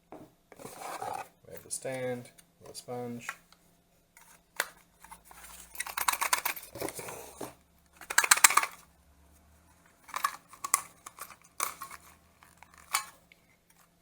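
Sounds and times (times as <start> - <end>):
small hard parts clicking: 5.7 - 7.1, 8.0 - 8.8.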